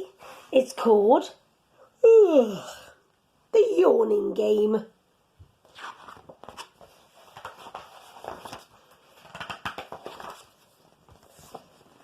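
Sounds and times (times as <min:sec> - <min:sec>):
paper pages rustling: 0:05.6 - 0:12.0.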